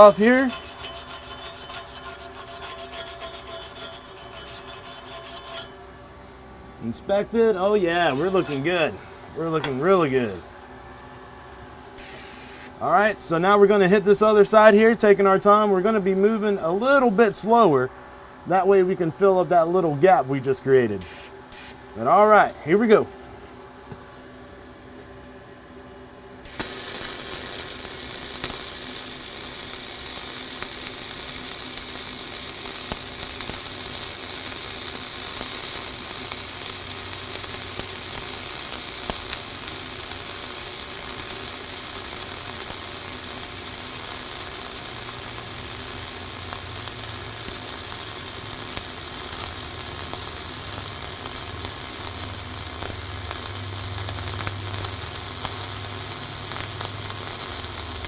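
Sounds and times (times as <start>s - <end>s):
arc welding hiss and pops: 0.0s - 5.8s, 7.9s - 8.9s, 9.5s - 11.1s, 11.9s - 12.8s, 21.0s - 21.8s, 26.4s - 58.0s.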